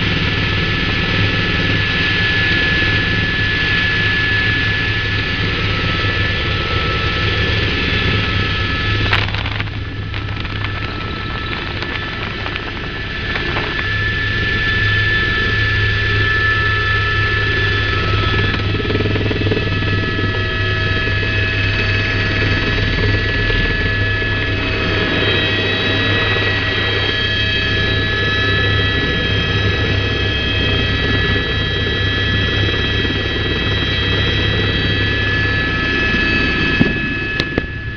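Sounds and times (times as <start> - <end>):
helicopter rotor drone: 0.0 - 37.9
high turbine whine: 0.0 - 37.9.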